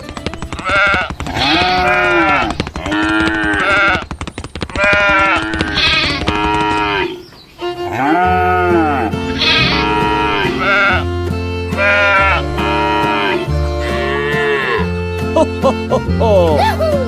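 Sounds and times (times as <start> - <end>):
sheep-like bleating calls: 0.6 - 4.0, 4.8 - 11.1, 11.7 - 15.0
background music with bass line: 7.8 - 17.0.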